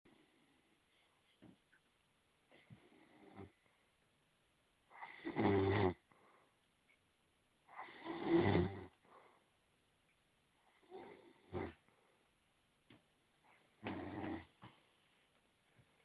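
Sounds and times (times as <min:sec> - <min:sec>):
deep snoring: 0:05.0 - 0:06.0, 0:07.8 - 0:08.9, 0:13.8 - 0:14.5.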